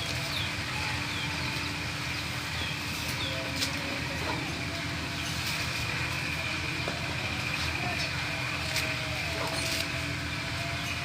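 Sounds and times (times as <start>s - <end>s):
steady background hum: 0.0s - 11.0s
small birds chirping: 0.2s - 3.6s.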